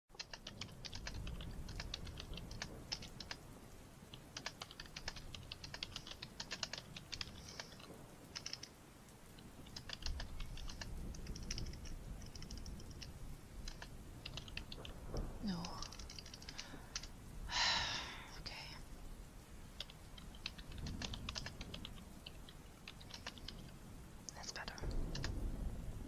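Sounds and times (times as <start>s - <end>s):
typing on computer keyboard: 0.1s - 3.4s, 4.1s - 8.7s, 9.6s - 15.0s, 15.6s - 17.1s, 19.8s - 23.7s, 24.4s - 25.4s
steady low rumble: 9.3s - 26.0s.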